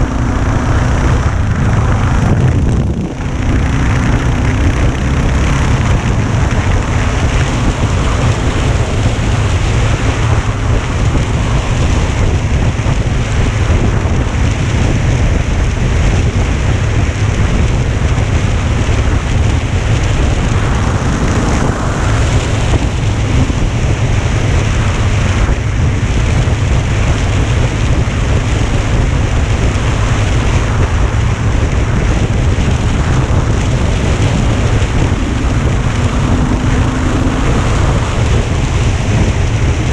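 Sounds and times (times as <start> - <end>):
wind buffeting microphone: 0.0 - 39.9.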